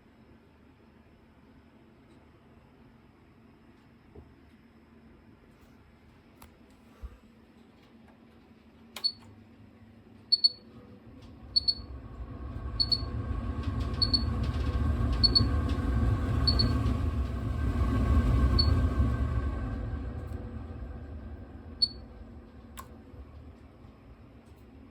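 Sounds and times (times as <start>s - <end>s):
exhaust fan motor humming: 9.0s - 24.9s
short high electronic beeps: 10.3s - 10.6s, 11.6s - 11.8s, 12.8s - 13.1s, 14.0s - 14.3s.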